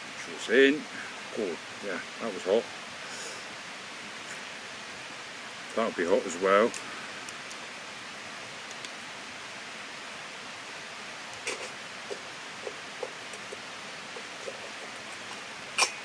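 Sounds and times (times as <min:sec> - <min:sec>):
stream and waterfall rushing: 0:00.0 - 0:16.0
small pops and clicks: 0:08.6 - 0:09.0.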